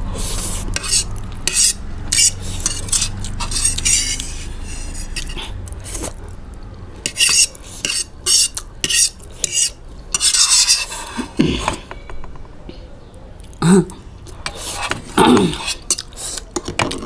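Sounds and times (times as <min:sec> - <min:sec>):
cutlery scraping on a plate: 0:00.3 - 0:06.1, 0:07.0 - 0:12.2, 0:14.4 - 0:17.0.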